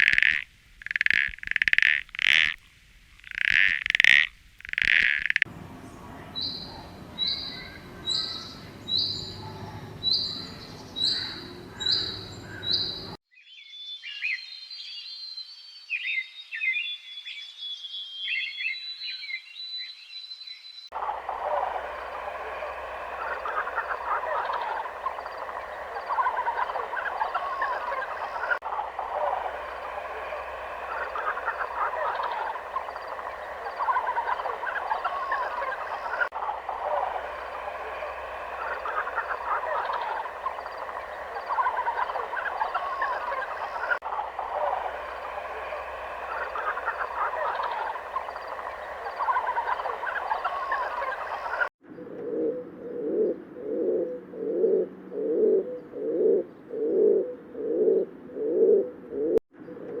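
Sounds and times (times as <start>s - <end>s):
chorus of animals calling: 3.4s - 13.2s, 20.9s - 51.7s
pigeons cooing: 5.5s - 13.2s, 21.0s - 59.4s.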